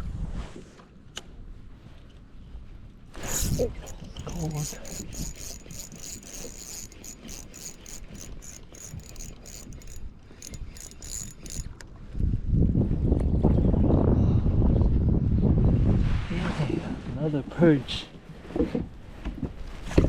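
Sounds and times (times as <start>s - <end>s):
fishing reel gears clicking: 3.2s - 11.8s
wind buffeting microphone: 8.2s - 17.2s.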